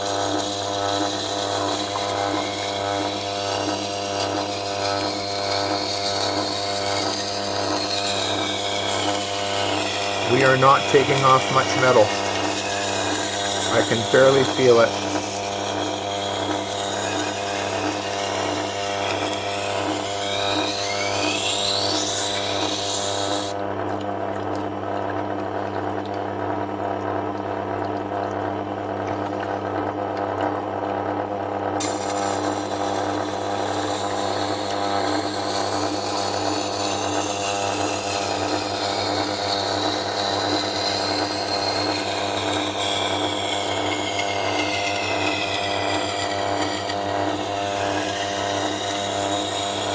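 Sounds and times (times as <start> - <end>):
knife grinding on stone: 0.0 - 23.6, 31.8 - 49.9
wet grinder motor hum: 0.0 - 49.9.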